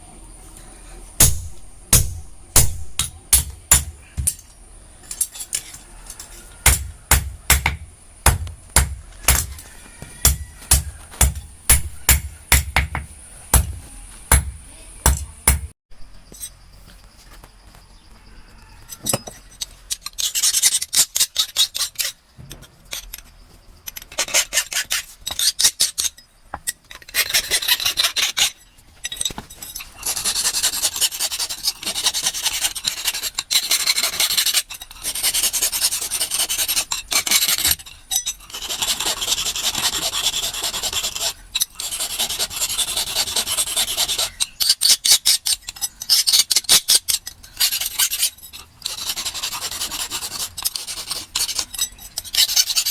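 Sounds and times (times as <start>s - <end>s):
file rasping on metal blade: 19.9s - 22.2s, 24.0s - 26.2s, 26.9s - 28.6s, 29.9s - 52.9s.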